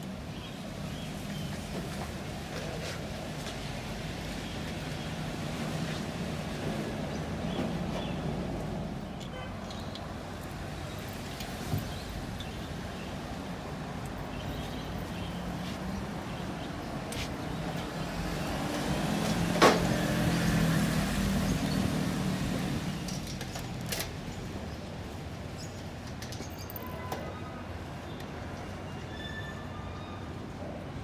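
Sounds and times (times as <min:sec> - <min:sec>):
vehicle engine passing: 0:17.8 - 0:23.2.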